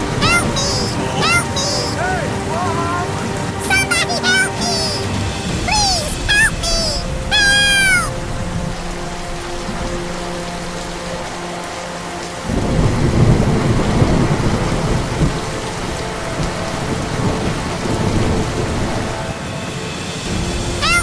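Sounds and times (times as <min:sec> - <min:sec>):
heavy rain: 0:07.6 - 0:19.2.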